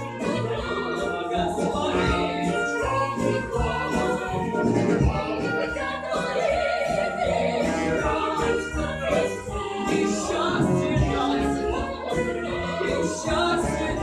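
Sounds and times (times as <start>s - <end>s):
several voices singing a song: 0.0s - 14.0s.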